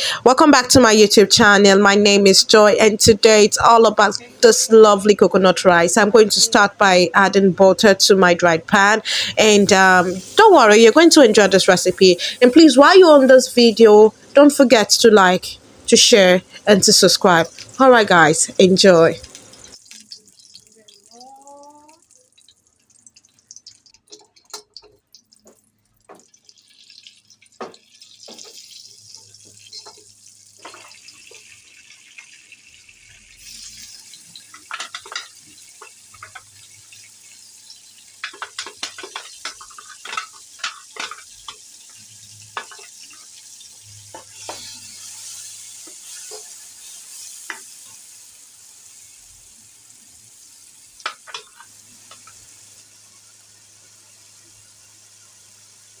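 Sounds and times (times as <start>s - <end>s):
food sizzling in a pan: 0.0s - 56.0s
spoon scraping a pan: 27.6s - 31.5s, 33.4s - 36.6s, 38.2s - 43.4s, 44.1s - 47.8s, 51.0s - 52.4s.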